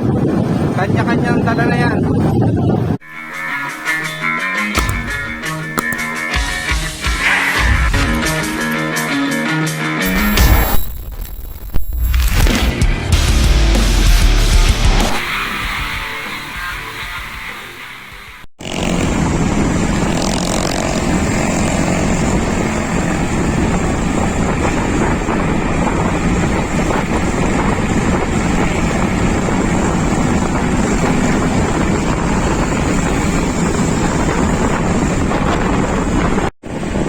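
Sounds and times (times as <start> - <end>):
wind rushing on microphone: 0.0 - 3.0, 21.0 - 37.0
music: 12.5 - 18.5.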